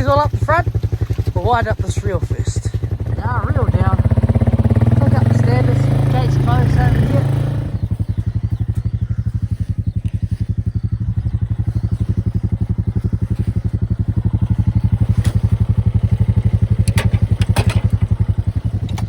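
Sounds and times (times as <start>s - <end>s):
small engine pulsing: 0.0s - 19.0s.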